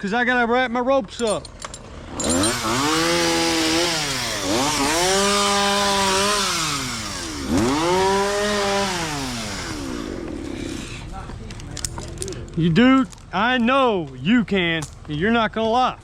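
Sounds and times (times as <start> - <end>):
chainsaw at high throttle: 1.8 - 11.1.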